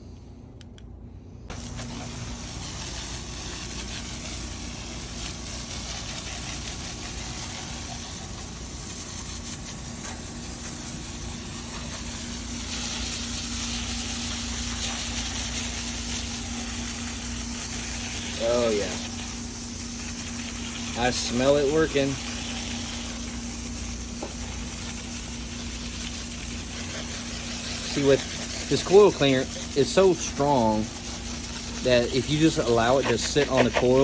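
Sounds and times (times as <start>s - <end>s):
steady low hum: 0.0s - 34.0s
hose spray hissing: 1.5s - 34.0s.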